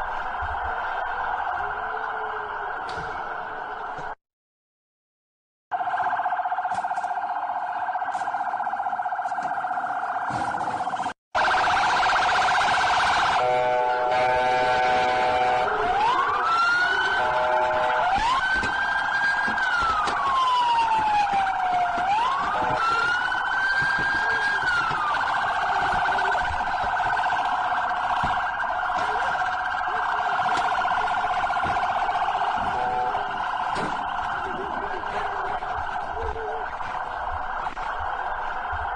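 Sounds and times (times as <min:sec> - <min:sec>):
police car siren: 0:00.0 - 0:04.2, 0:05.7 - 0:38.9.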